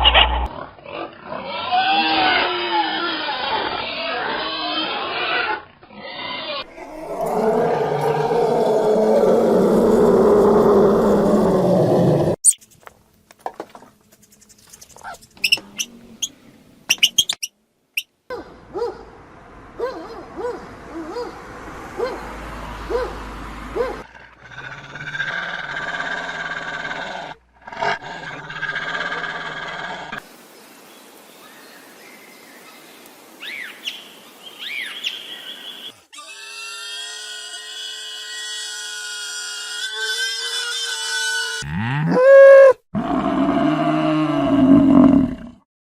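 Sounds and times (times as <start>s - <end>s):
rough sustained animal call: 0.0s - 0.5s, 1.4s - 12.4s, 23.8s - 30.2s
outdoor background noise: 0.0s - 45.6s
short arched chirping calls: 12.4s - 12.9s, 14.2s - 18.2s
high squeaks and clicks: 12.4s - 13.0s, 14.1s - 15.9s, 16.9s - 18.1s.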